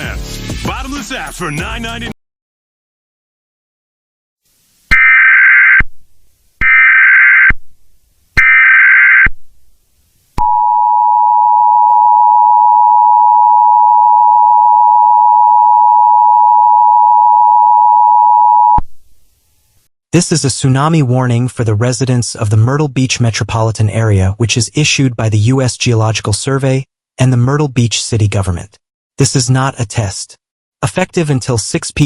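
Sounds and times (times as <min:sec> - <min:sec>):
two-tone alarm: 0:04.9 - 0:05.8, 0:06.6 - 0:07.6, 0:08.4 - 0:09.3, 0:10.4 - 0:18.8.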